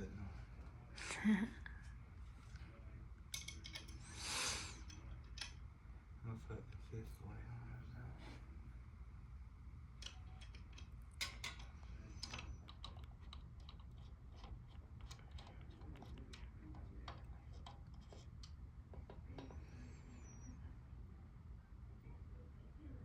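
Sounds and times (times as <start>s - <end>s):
low steady hum: 0.0s - 23.0s
small hardware clicks and taps: 10.0s - 19.6s.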